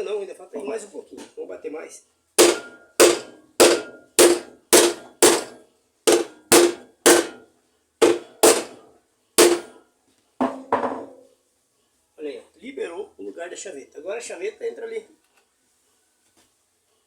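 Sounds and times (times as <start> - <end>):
hammer blows ringing: 2.4 - 8.8, 9.4 - 9.8.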